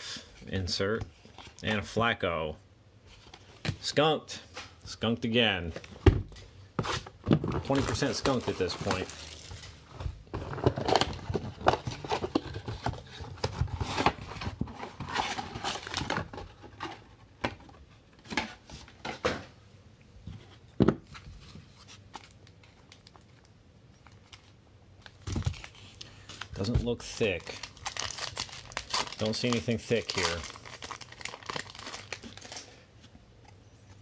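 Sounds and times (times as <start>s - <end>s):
cards and foil wrapper crinkling: 7.6s - 14.1s, 22.1s - 32.9s.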